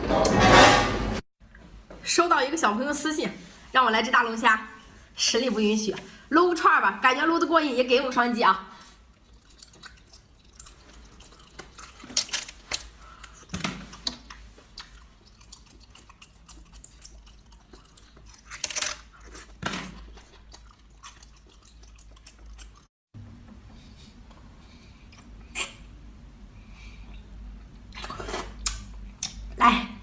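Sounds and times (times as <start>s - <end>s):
wet chewing and mouth smacks: 9.0s - 22.9s, 27.1s - 29.6s
slurps: 27.0s - 29.3s.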